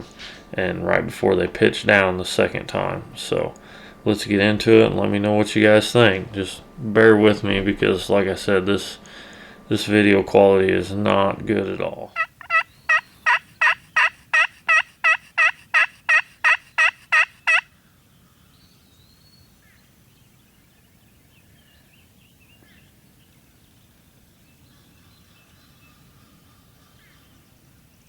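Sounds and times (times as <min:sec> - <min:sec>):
turkey yelping: 0:12.1 - 0:17.7
faint bird chirps: 0:12.1 - 0:28.0.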